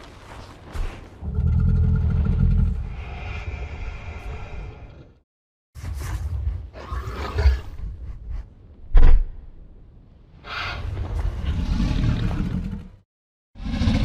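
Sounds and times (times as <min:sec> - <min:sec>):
deep dinosaur growls: 0:01.2 - 0:05.2, 0:10.5 - 0:13.0, 0:13.6 - 0:14.0.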